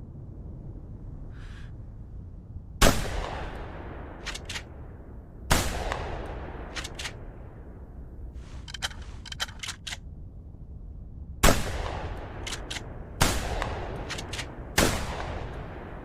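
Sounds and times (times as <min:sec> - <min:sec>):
shotgun action clicks: 0:04.2 - 0:04.7, 0:06.7 - 0:07.2, 0:08.6 - 0:10.0, 0:12.4 - 0:12.9, 0:14.0 - 0:14.5
shotgun pump clacks: 0:04.2 - 0:04.7, 0:06.7 - 0:07.2, 0:08.6 - 0:10.0, 0:12.4 - 0:12.8, 0:14.0 - 0:14.5.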